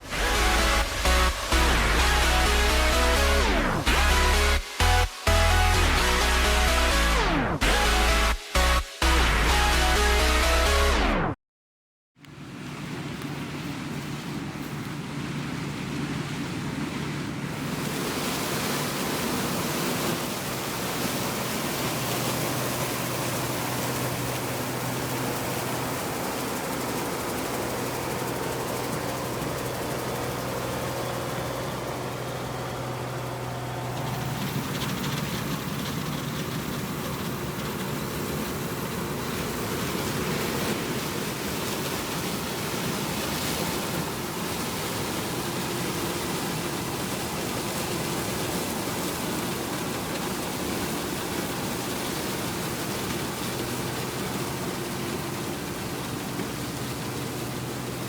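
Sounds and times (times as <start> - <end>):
machinery engine humming: 0.0 - 11.0, 17.4 - 41.8, 45.3 - 58.0
constant rushing noise: 0.0 - 11.3, 12.2 - 58.0.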